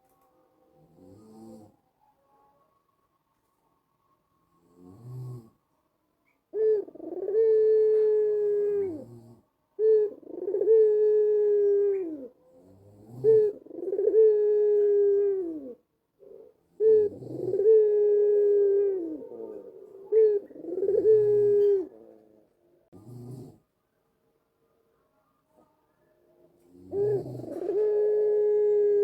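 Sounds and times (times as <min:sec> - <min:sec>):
dove cooing: 0:06.2 - 0:22.4, 0:26.6 - 0:29.0.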